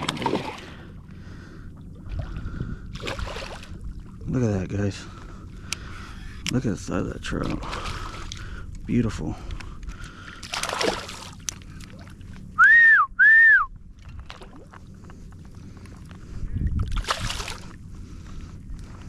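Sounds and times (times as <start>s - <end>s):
shallow water splashing: 0.0s - 4.3s, 7.2s - 12.5s, 13.9s - 16.2s, 16.8s - 19.0s
whistled notes: 12.6s - 13.7s.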